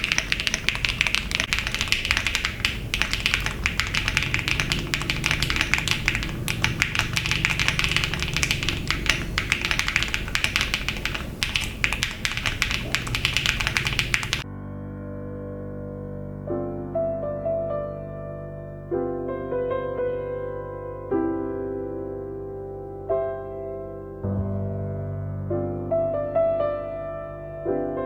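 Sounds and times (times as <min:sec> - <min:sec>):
fast typing on mechanical keyboard: 0:00.0 - 0:14.4.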